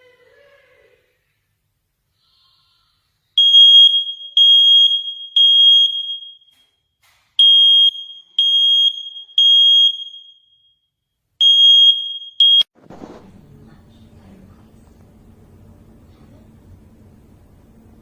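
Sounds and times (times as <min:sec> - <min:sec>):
smoke alarm beeping: 0:03.4 - 0:06.8, 0:07.4 - 0:12.8.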